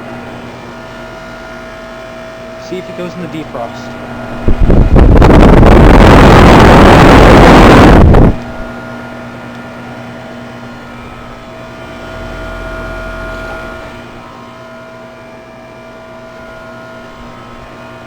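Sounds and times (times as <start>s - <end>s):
heat pump unit humming: 0.0s - 18.0s
low rumble: 4.2s - 8.7s
loud rushing noise: 4.3s - 8.4s.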